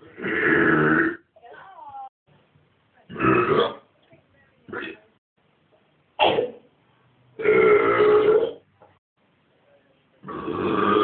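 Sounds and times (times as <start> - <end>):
person burping: 0.0 - 1.3, 3.1 - 3.8, 7.4 - 8.6, 10.2 - 11.0.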